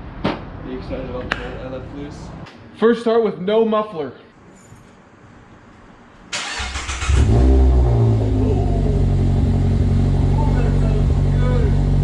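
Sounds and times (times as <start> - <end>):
car engine idling loudly: 8.0 - 12.0.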